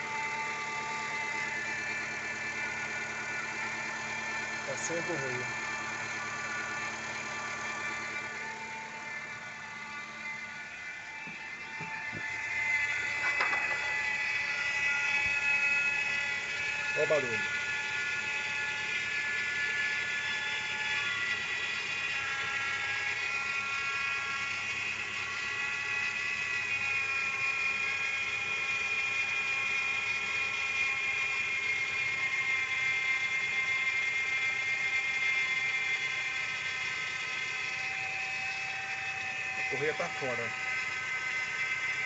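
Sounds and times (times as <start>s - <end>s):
high-pitched engine whine: 0.0s - 42.0s
car engine idling: 0.4s - 10.8s.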